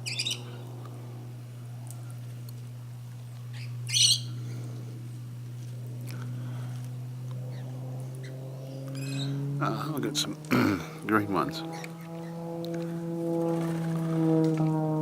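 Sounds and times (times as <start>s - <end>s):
bird chirping: 0.0s - 0.6s, 3.5s - 4.4s, 7.5s - 9.5s
low hum: 0.0s - 15.0s.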